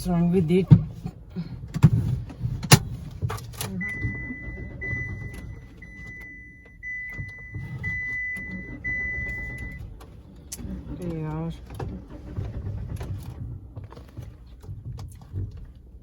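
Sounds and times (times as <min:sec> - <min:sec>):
car warning chime beeping: 0:03.7 - 0:09.9.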